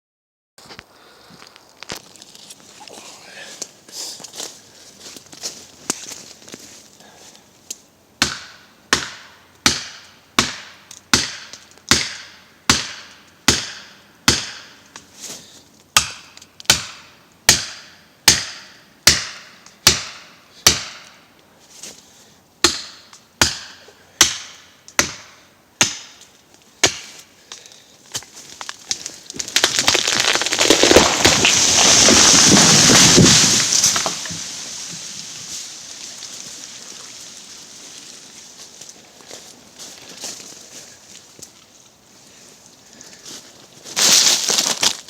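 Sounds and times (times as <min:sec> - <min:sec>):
axe chopping wood: 0:08.2 - 0:14.8, 0:16.0 - 0:21.2, 0:22.6 - 0:26.2, 0:26.8 - 0:27.2, 0:29.4 - 0:34.5.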